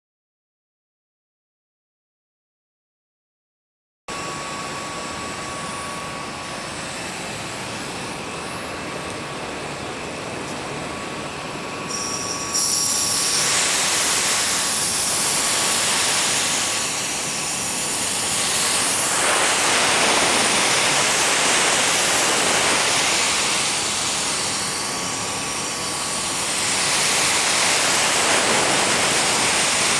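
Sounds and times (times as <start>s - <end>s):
air escaping through leaks: 11.9s - 29.9s
air rushing and hissing: 12.5s - 29.9s.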